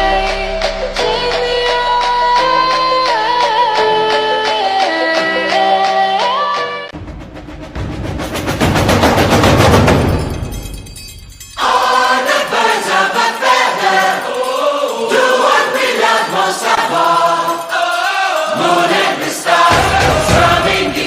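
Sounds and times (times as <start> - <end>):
heavy bass: 0.0 - 3.8, 7.0 - 10.9
music with choir singing: 11.6 - 21.0.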